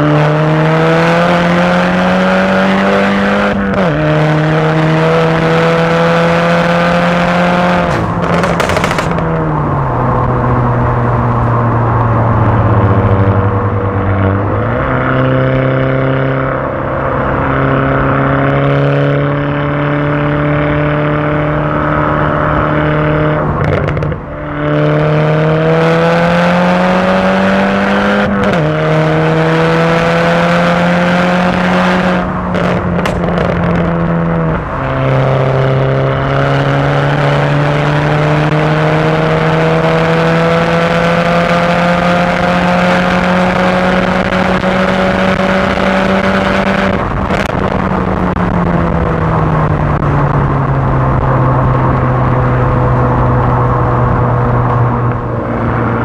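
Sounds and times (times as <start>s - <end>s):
car engine accelerating through gears: 0.0s - 56.0s
exhaust pops and crackles: 7.8s - 9.6s, 23.6s - 24.2s, 32.4s - 34.5s, 44.4s - 53.0s.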